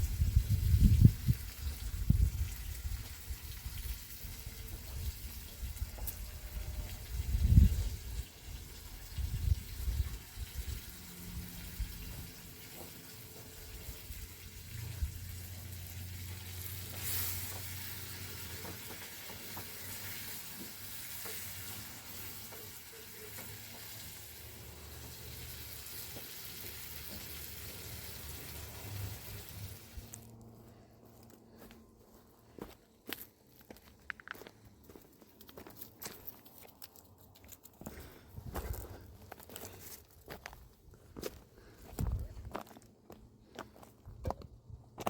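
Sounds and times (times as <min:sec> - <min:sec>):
food sizzling in a pan: 0:14.7 - 0:30.1.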